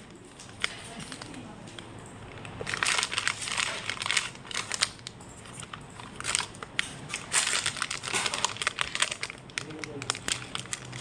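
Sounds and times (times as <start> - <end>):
packaging crinkling: 2.3 - 11.0.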